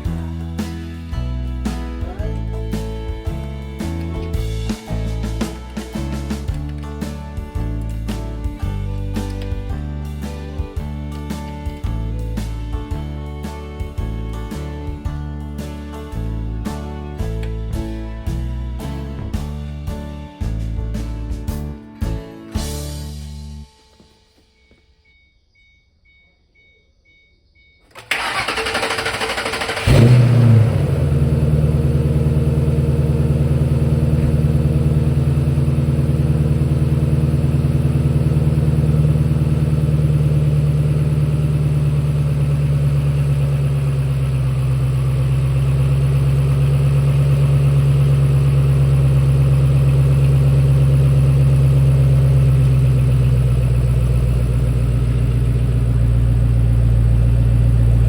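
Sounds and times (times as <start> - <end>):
car engine idling: 0.0 - 10.4, 27.9 - 58.0
starter motor cranking: 27.9 - 32.2.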